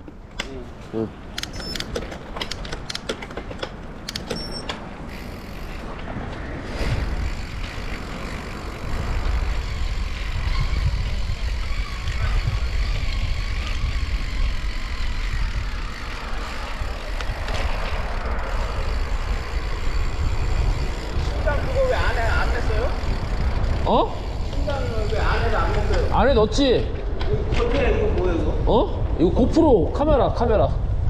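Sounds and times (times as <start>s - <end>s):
vehicle rumbling: 0.0s - 31.0s
sharp clicks: 1.3s - 4.8s
wind noise on microphone: 3.8s - 31.0s.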